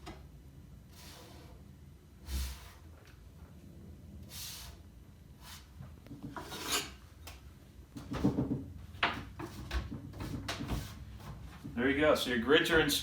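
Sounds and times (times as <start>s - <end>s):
shelf scraping along wooden wall: 0.8s - 3.0s, 5.4s - 7.0s, 8.0s - 11.8s.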